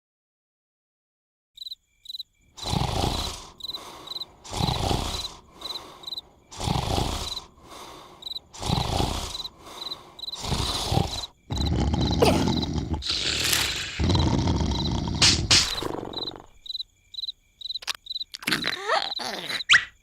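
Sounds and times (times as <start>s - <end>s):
crickets chirping: 1.6s - 20.0s
cartoon snoring: 2.6s - 16.6s, 18.4s - 20.0s.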